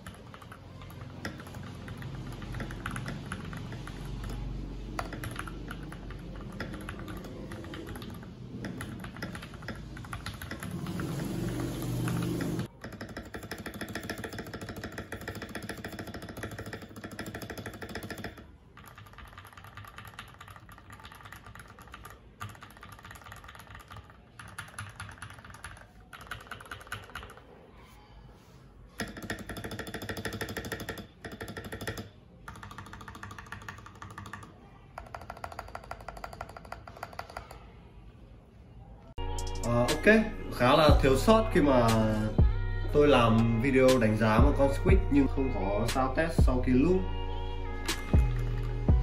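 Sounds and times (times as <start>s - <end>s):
mechanical keyboard typing: 0.0s - 27.6s, 29.0s - 37.7s.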